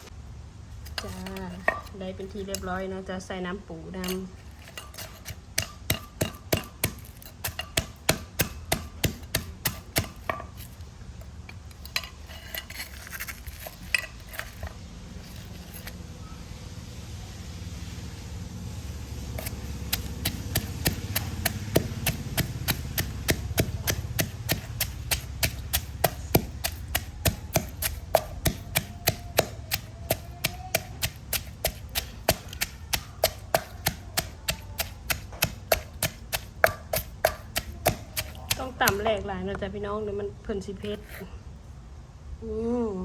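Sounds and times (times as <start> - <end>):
pestle pounding in a mortar: 4.7 - 10.8, 19.2 - 39.3.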